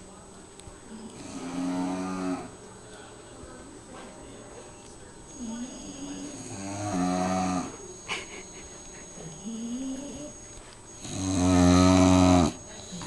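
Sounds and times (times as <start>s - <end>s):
dog snoring loudly: 1.2s - 2.5s, 5.4s - 7.8s, 9.4s - 10.3s, 11.0s - 13.0s.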